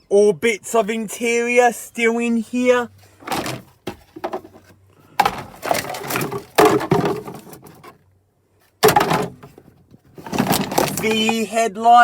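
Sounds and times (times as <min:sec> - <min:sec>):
rustling and clattering: 0:02.9 - 0:11.5.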